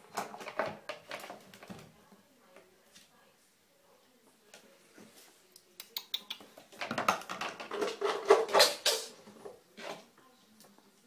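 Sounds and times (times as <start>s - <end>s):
ferrets scrabbling in a bathtub: 0.0s - 3.1s, 6.4s - 10.2s.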